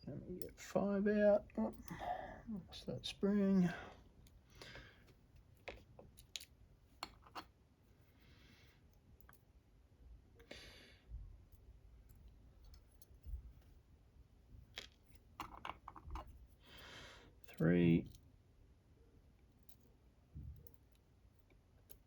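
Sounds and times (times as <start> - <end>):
small metal clicks and taps: 5.6 - 7.5, 14.7 - 16.4.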